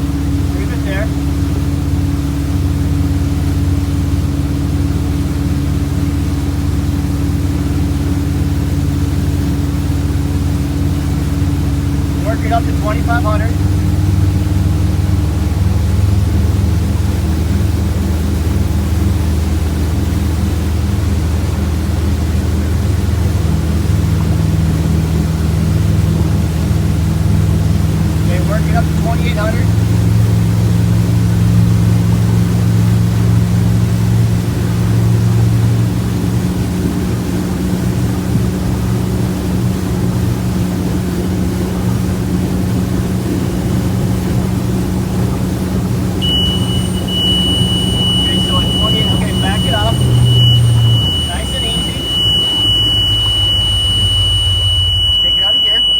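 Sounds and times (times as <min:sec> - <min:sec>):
boat engine running: 0:00.0 - 0:55.9.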